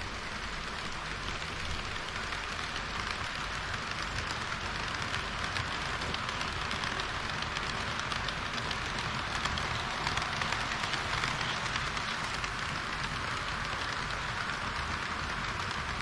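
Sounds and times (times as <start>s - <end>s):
model train wheels rolling: 0.0s - 16.0s.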